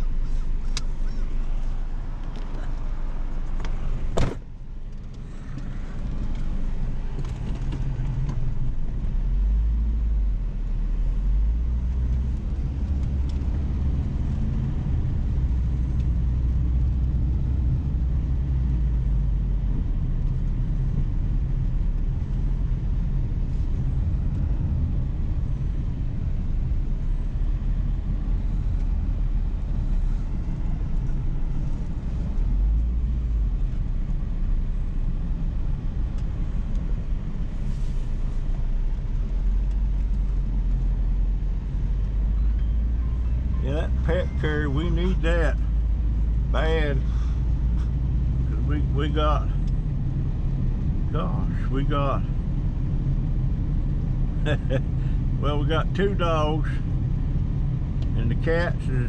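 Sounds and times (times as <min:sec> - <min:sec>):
car engine and road rumble: 0:00.0 - 0:59.0
sharp thump: 0:04.1 - 0:04.5.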